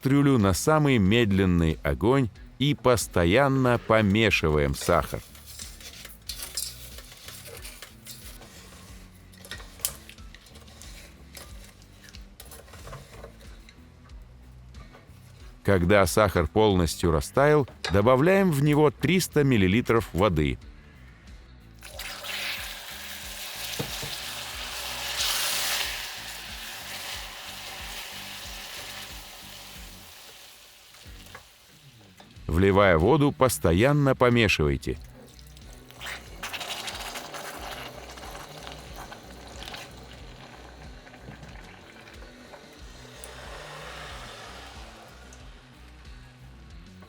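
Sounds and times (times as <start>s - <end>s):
utensil scraping and clinking pan: 4.7s - 13.7s
caramel spitting and sizzling: 21.8s - 32.4s, 35.1s - 45.6s.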